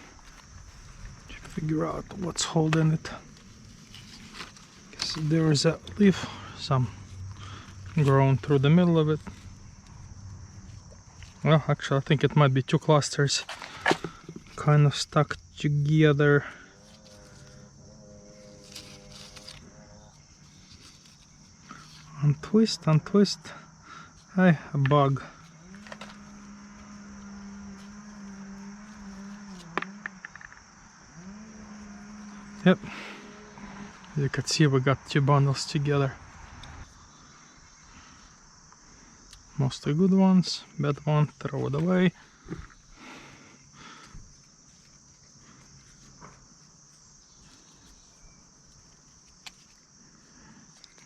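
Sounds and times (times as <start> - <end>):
high chirring of insects: 0.0 - 51.0
flying insect buzzing: 16.4 - 22.2, 25.2 - 34.2
soft clicks of grapes handled: 48.7 - 49.9, 50.7 - 51.0.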